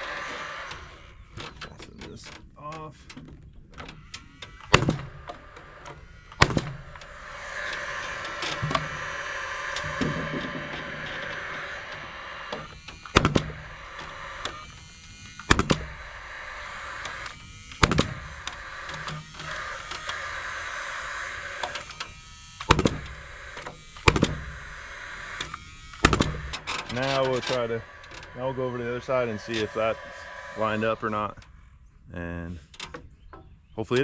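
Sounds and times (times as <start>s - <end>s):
steady mechanical hum: 0.0s - 34.0s
sharp knocks: 6.4s - 20.0s, 22.7s - 31.2s.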